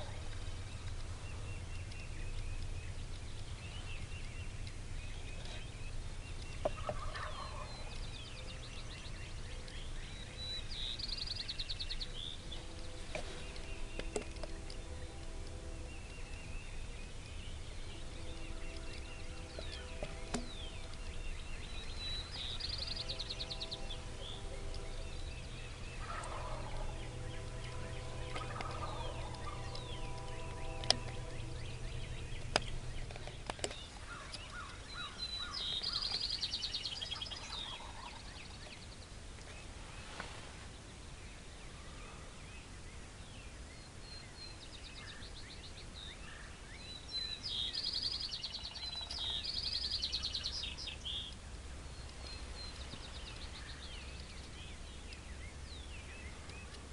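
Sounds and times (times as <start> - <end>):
songbirds chirping: 0.0 - 56.9
steady low hum: 0.0 - 56.9
distant turkeys gobbling: 4.7 - 8.8, 17.9 - 36.3, 37.0 - 38.3, 48.1 - 49.8
sharp clicks: 32.3 - 34.9.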